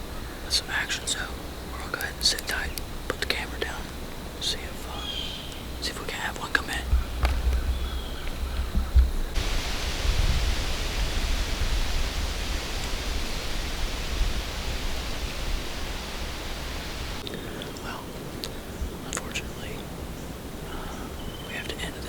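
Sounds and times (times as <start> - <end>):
steady hiss: 0.0 - 22.0
wind buffeting microphone: 6.7 - 17.6.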